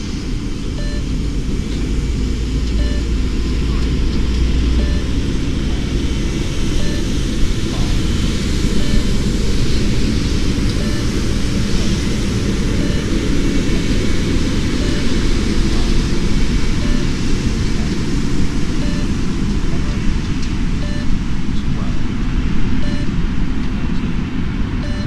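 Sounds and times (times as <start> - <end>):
faint electronic beeps: 0.8 - 1.1, 2.7 - 4.0, 4.7 - 5.9, 6.8 - 8.0, 8.8 - 10.0, 10.7 - 12.1, 12.7 - 14.0, 14.8 - 16.1, 16.7 - 18.0, 18.8 - 20.0, 20.8 - 21.8, 22.8 - 23.2, 24.8 - 25.0.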